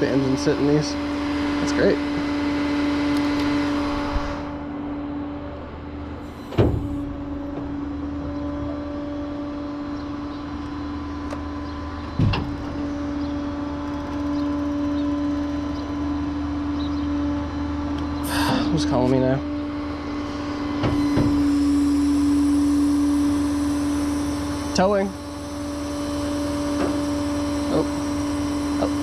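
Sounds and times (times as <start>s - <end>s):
sharp thumps: 6.3s - 7.7s.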